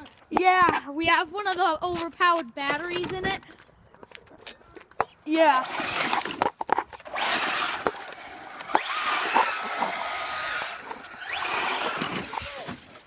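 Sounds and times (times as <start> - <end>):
remote-control car motor whirring: 5.0 - 13.0.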